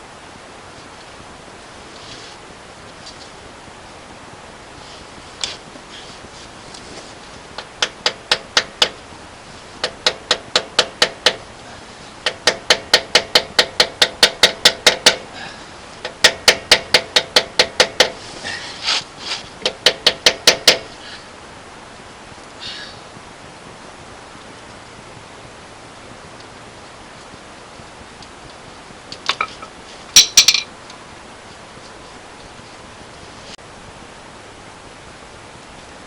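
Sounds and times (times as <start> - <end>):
hammer blows on metal: 12.2 - 18.6, 19.6 - 21.0.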